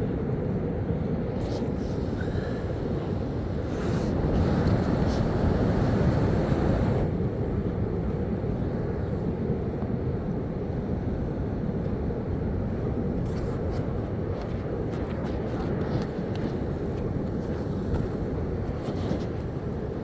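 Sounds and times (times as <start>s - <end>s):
low rumbling noise: 0.0s - 15.2s.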